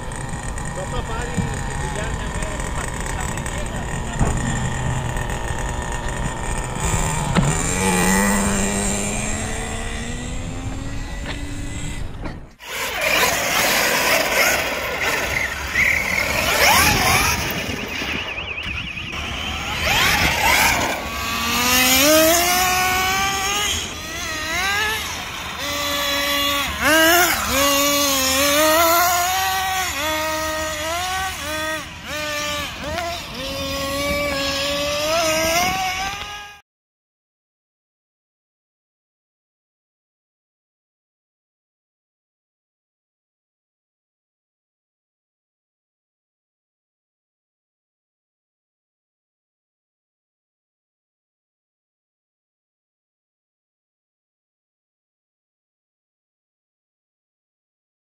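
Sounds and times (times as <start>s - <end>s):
model car motors whining: 0.0s - 36.6s.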